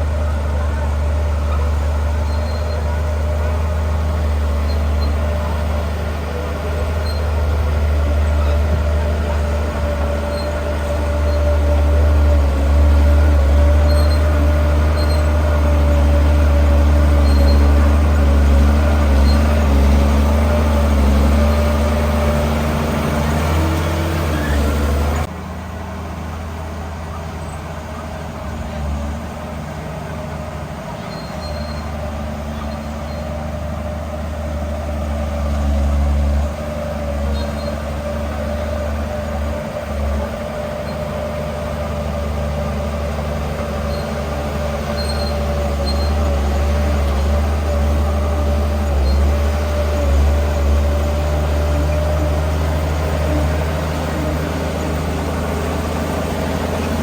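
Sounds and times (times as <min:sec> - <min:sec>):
heavy diesel engine rumbling: 0:00.0 - 0:57.0.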